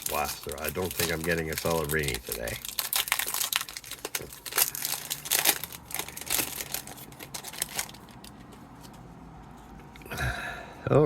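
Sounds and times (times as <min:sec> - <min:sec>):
plastic wrapper crinkling and tearing: 0:00.0 - 0:09.0.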